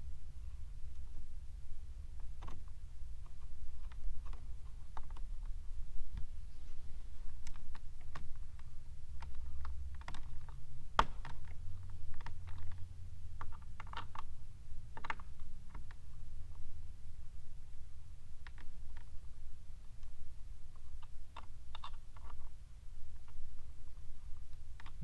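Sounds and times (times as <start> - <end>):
plastic parts clicking and tapping: 2.2 - 5.6, 7.4 - 12.8, 13.4 - 14.3, 14.9 - 16.0, 24.5 - 25.0.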